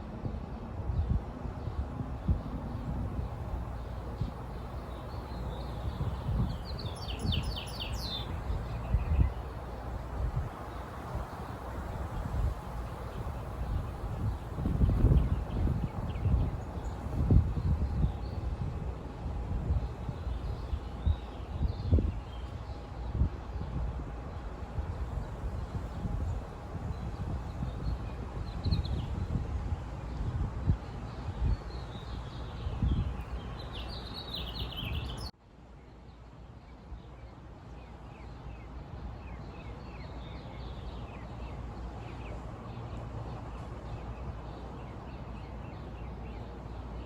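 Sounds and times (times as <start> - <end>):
wind buffeting microphone: 0.0 - 35.3
bird chirping: 4.9 - 9.4, 31.3 - 35.3.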